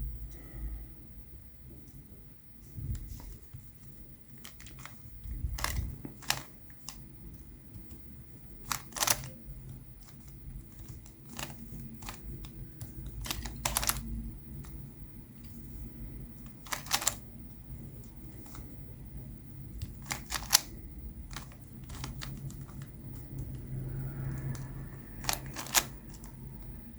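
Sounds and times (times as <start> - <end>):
plastic puzzle cube clicking: 4.3 - 7.1, 7.8 - 14.8, 16.4 - 17.3, 19.7 - 26.7.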